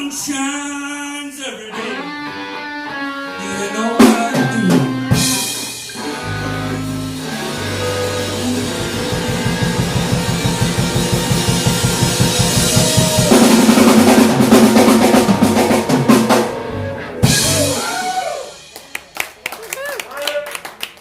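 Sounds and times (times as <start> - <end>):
blues band playing: 1.6 - 19.4
fast drum roll: 8.4 - 16.6, 17.2 - 18.2.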